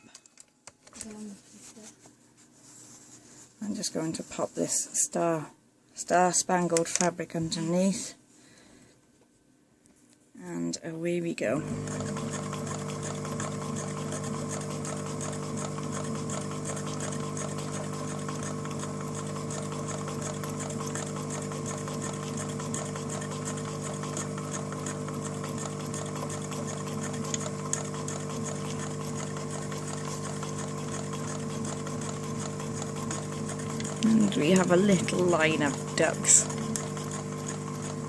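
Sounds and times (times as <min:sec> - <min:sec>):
sewing machine motor hum: 0:11.5 - 0:38.0
needle ticking: 0:11.8 - 0:38.0.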